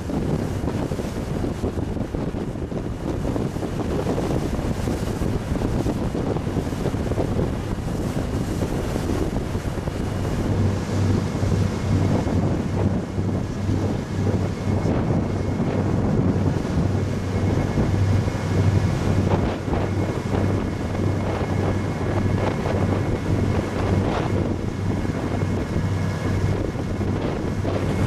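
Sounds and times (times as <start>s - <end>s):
boat engine drone: 0.0s - 28.0s
wind buffeting microphone: 0.0s - 28.0s.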